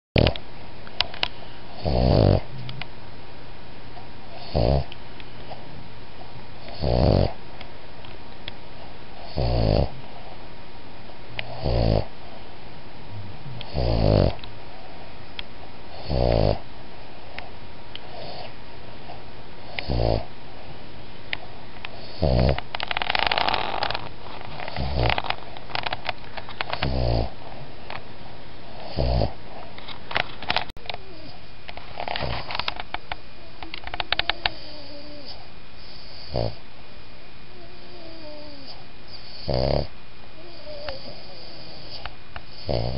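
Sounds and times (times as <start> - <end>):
dog snoring: 0.2 - 0.4, 1.7 - 2.5, 4.3 - 5.0, 6.6 - 7.4, 9.2 - 10.3, 11.4 - 12.1, 13.6 - 14.9, 15.9 - 16.6, 18.0 - 20.3, 21.9 - 27.6, 28.7 - 29.7, 34.0 - 36.6, 37.6 - 42.9
crackly rattling breaths: 21.3 - 36.6, 40.5 - 42.9.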